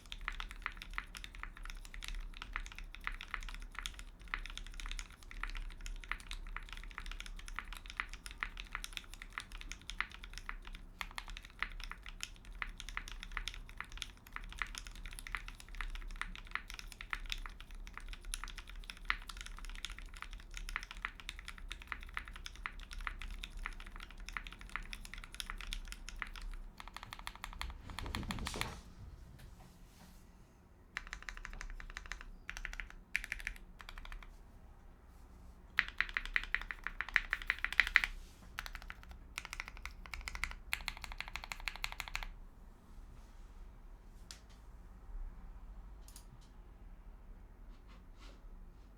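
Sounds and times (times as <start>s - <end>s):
mechanical keyboard typing: 0.0s - 28.8s, 31.0s - 34.4s, 35.8s - 42.4s.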